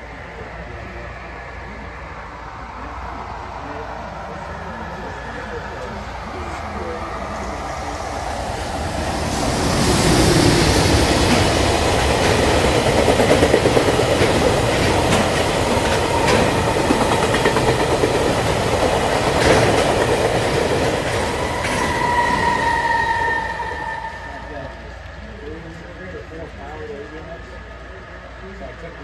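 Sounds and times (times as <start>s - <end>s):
freight train wheels clattering: 8.7s - 23.4s
steady high tone: 20.8s - 25.4s.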